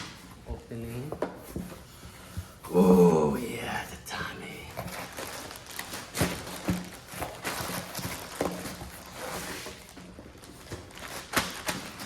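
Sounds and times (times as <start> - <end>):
packaging rustling: 4.7 - 12.0.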